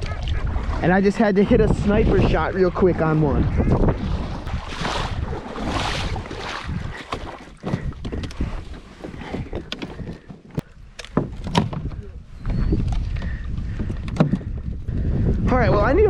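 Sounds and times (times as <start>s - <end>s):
wind on microphone: 0.0s - 16.0s
paddle strokes swishing: 3.8s - 10.3s.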